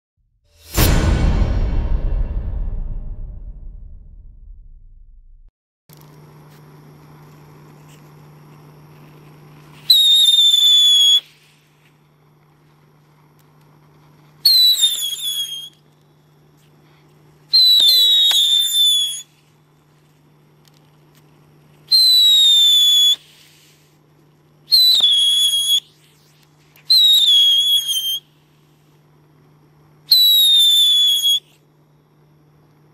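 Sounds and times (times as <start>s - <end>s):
whistling fireworks: 9.4s - 13.2s, 13.9s - 16.7s, 17.4s - 19.8s, 21.8s - 24.0s, 24.6s - 28.8s, 30.0s - 31.7s.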